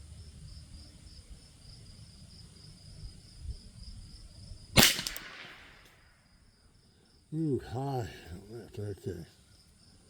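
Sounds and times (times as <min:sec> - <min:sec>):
insects chirping: 0:00.0 - 0:10.0
rifle shot: 0:04.8 - 0:06.0.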